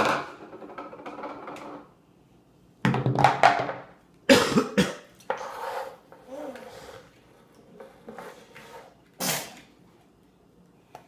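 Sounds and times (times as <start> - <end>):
child coughing: 4.3 - 5.1
child's voice: 6.2 - 6.8.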